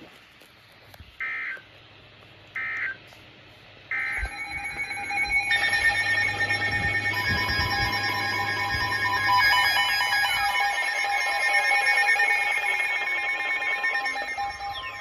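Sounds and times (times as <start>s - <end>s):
buzzy data bursts: 3.9s - 15.0s
electronic alert tone: 3.9s - 15.0s.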